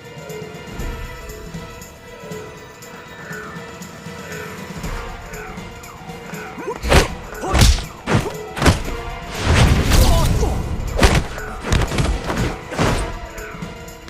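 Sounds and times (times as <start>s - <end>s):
background music: 0.0s - 14.0s
fight punch thuds: 6.8s - 10.3s, 10.9s - 13.1s
heavy crash: 6.9s - 13.2s.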